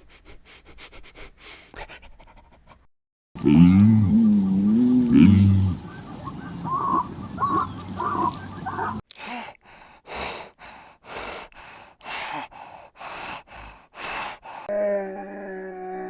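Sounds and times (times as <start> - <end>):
short pitched calls: 3.4 - 9.0
animal breathing hard: 9.7 - 14.7.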